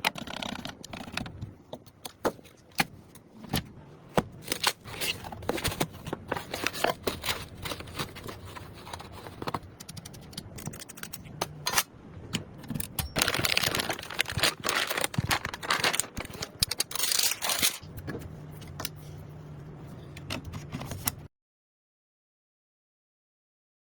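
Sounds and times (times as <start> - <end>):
low steady hum: 0.0 - 21.3
scraping and rustling: 4.4 - 9.9, 13.2 - 21.2.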